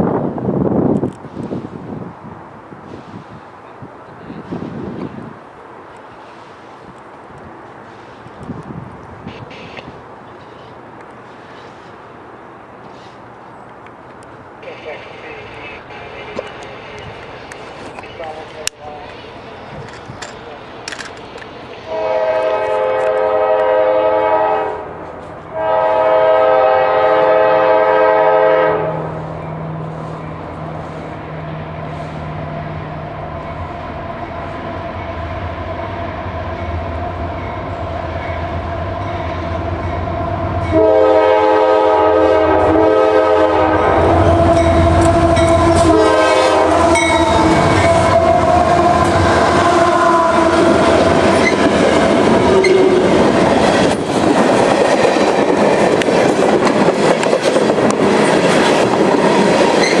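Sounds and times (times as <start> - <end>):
diesel locomotive engine rumble: 0.0 - 60.0
train wheels clattering on rails: 16.3 - 21.7, 50.5 - 60.0
multi-chime train air horn: 21.9 - 24.9, 25.5 - 29.2, 40.6 - 50.7.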